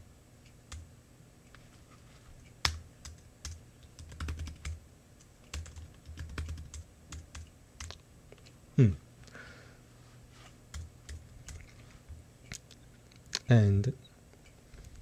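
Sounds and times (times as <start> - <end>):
keyboard keys tapping: 2.6 - 4.8, 5.5 - 8.0.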